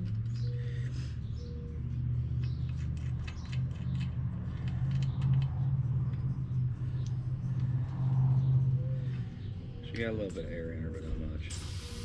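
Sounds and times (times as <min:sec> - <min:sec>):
clicks and rustling of tire work: 0:02.4 - 0:06.2.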